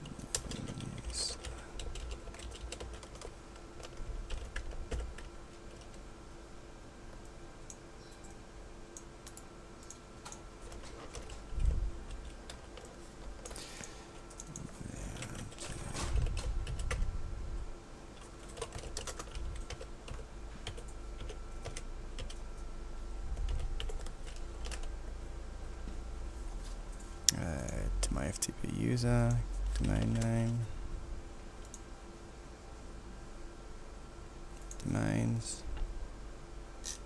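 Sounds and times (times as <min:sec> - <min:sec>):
faint steady hum: 0:00.0 - 0:37.0
keyboard typing clicks: 0:07.2 - 0:13.6, 0:14.3 - 0:17.0, 0:18.2 - 0:22.7, 0:29.2 - 0:30.6.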